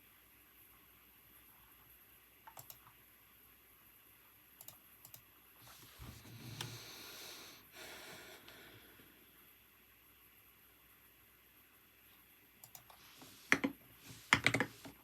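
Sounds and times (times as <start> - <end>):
computer keyboard keystrokes: 2.5 - 3.0, 4.6 - 5.2, 12.6 - 13.7, 14.3 - 15.0.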